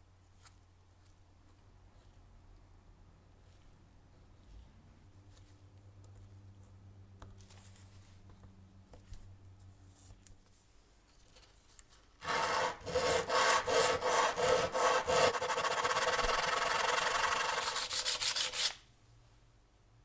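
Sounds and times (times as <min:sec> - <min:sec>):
abrasive rubbing: 0:12.2 - 0:18.7.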